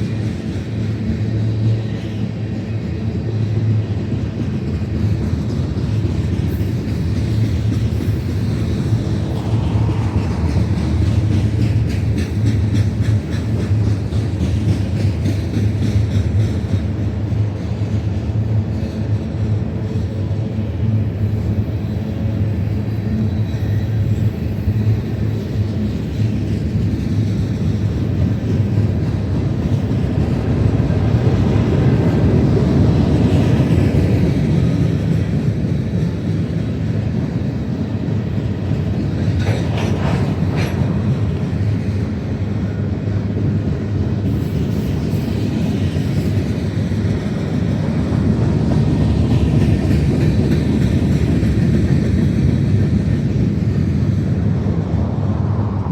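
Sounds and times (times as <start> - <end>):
train cars clanking: 0.0 - 55.8
train wheels rumbling on rails: 0.0 - 55.9.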